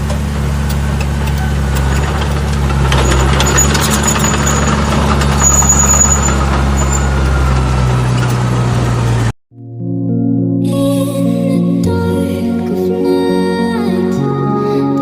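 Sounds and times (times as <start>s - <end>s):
toy bulldozer motor drone: 1.0s - 9.3s.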